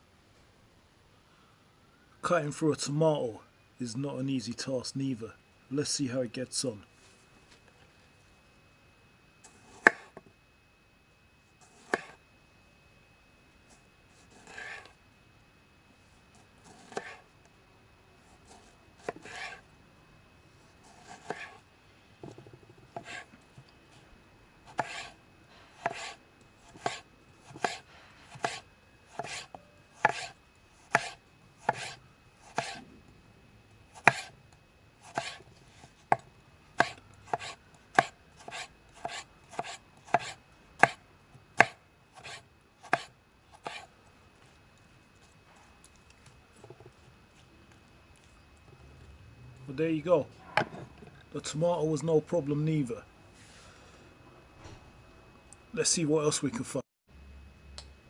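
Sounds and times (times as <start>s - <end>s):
knife chopping tomato: 9.5s - 10.2s, 11.7s - 12.2s, 14.3s - 14.9s, 16.6s - 17.2s, 18.4s - 19.6s, 20.9s - 21.6s, 22.2s - 23.3s, 24.7s - 25.2s, 25.8s - 32.8s, 34.0s - 34.4s, 35.1s - 43.9s.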